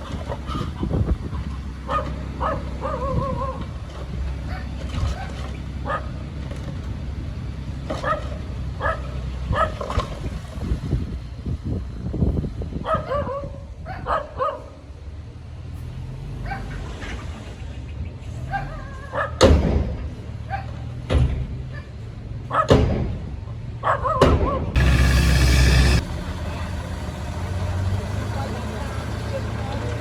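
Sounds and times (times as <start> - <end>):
heavy machine engine rumble: 24.8 - 30.0.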